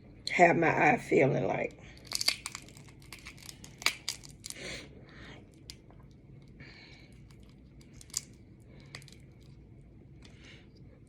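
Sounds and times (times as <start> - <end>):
crunchy chewing: 2.0 - 10.5.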